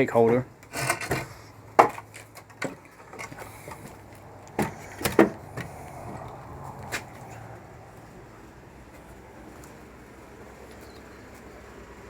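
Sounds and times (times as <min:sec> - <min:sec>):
objects knocking and clunking: 0:00.2 - 0:06.3.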